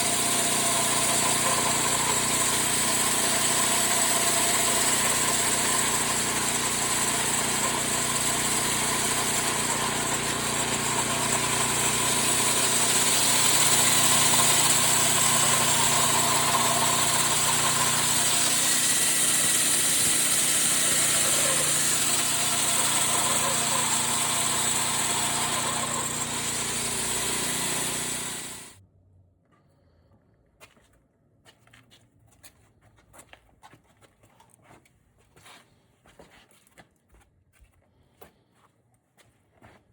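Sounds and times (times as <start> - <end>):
bandsaw mill running: 0.0 - 28.8.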